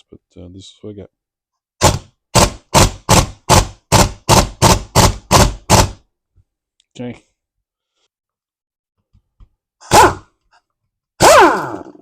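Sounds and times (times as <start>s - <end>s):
impact wrench hammering: 1.8s - 6.1s.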